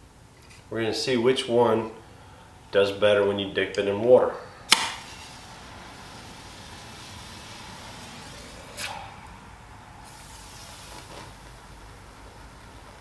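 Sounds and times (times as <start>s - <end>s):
sharp hissing burst: 4.2s - 13.0s
match burning with hiss: 4.6s - 13.0s.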